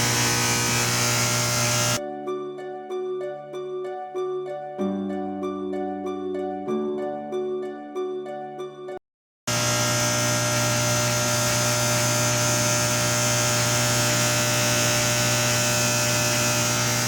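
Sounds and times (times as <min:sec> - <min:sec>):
power cables humming: 0:00.0 - 0:02.0, 0:09.5 - 0:17.0.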